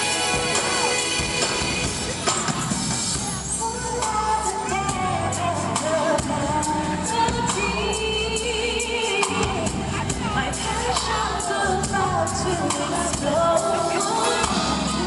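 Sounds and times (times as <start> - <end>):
bass and drums: 0.0 - 15.0
women singing in harmony: 3.4 - 15.0.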